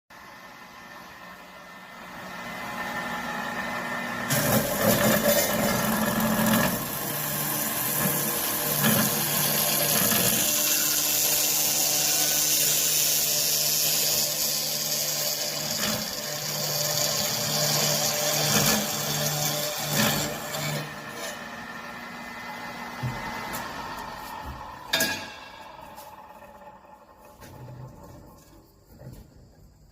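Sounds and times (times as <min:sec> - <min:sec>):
cold saw motor hum: 0:00.1 - 0:29.2
saw blade cutting metal: 0:04.3 - 0:27.5.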